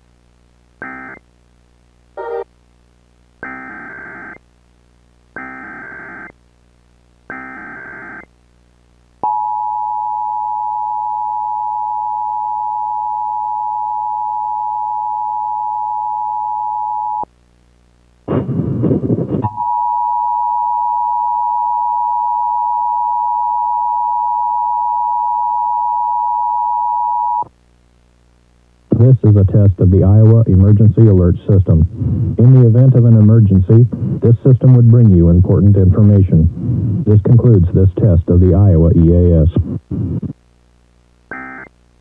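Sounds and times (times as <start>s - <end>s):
harsh noise: 18.3s - 19.5s.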